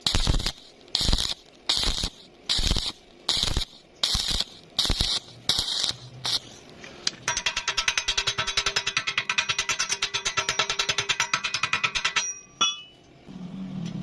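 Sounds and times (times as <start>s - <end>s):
electric arc welding crackling: 0.0s - 6.8s.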